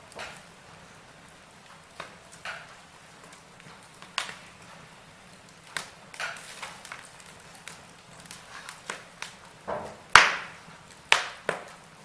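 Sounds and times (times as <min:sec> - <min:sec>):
wood fire crackling: 0:00.0 - 0:12.0
sharp pop of fire: 0:08.3 - 0:11.8.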